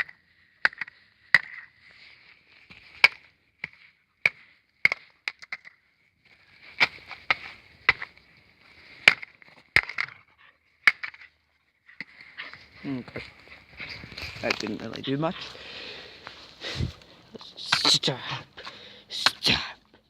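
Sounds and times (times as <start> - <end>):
light scraping and rattling: 9.9 - 15.6.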